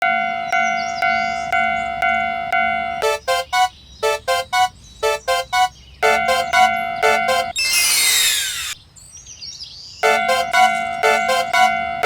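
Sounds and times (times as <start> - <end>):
railroad crossing alarm bell: 0.0 - 7.6, 10.0 - 12.0
rising three-note electronic chime: 3.0 - 7.6, 10.0 - 11.8.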